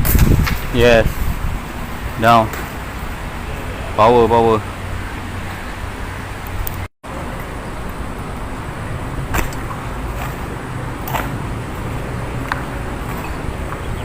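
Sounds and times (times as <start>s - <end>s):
outdoor background rumble: 0.0s - 14.0s.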